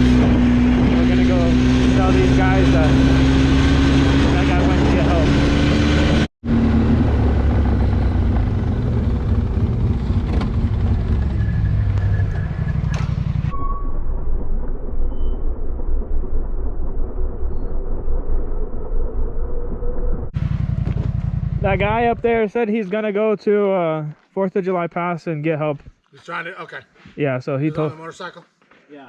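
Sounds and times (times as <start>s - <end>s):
atv engine running: 0.0s - 13.5s, 18.9s - 22.4s.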